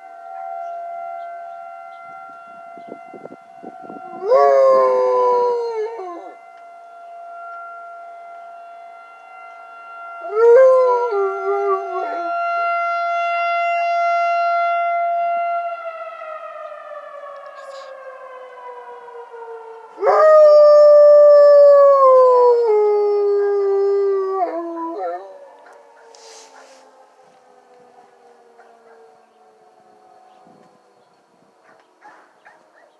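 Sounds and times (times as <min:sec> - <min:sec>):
tornado warning siren: 0:00.0 - 0:32.9
dog howling: 0:04.2 - 0:06.4, 0:10.2 - 0:12.3, 0:20.0 - 0:26.8.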